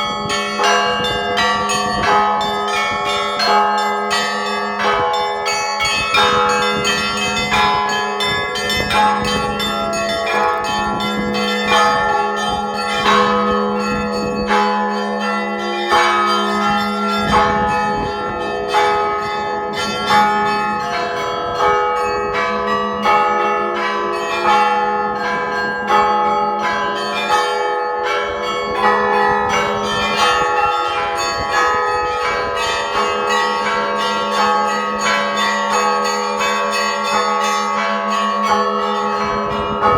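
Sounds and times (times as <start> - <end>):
small bells ringing rapidly: 0.0 - 23.2
large bell humming: 0.0 - 39.9.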